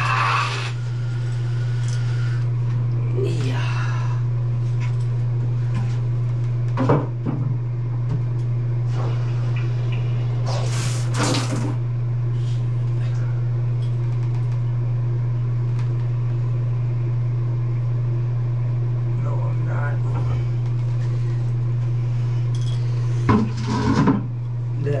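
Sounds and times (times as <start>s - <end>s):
water running from a tap: 10.7s - 11.8s.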